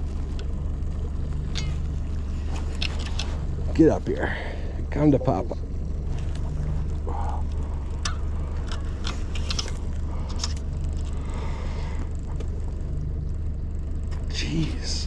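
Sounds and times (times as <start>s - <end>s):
fishing gear clicks and rattles: 0.0s - 3.7s, 6.1s - 12.8s
boat motor idling: 0.0s - 15.0s.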